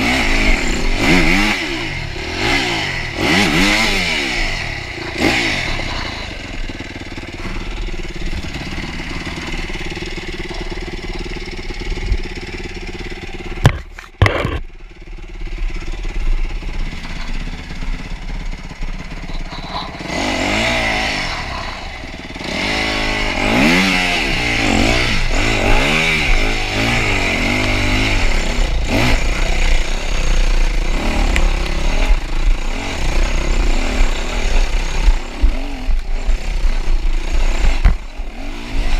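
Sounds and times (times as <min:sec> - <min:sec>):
dirt bike engine revving: 0:00.0 - 0:38.9.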